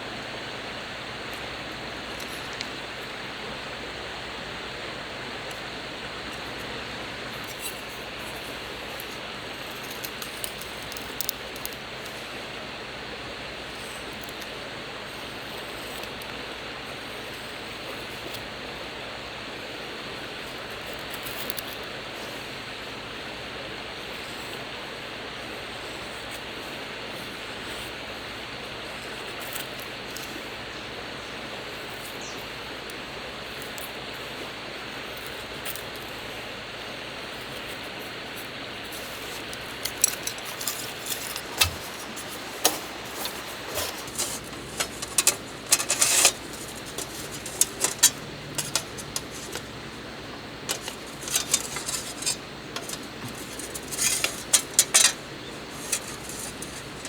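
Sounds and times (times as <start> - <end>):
rushing outdoor noise: 0.0 - 57.0
sharp clicks and clinks: 39.4 - 49.8, 50.6 - 57.0.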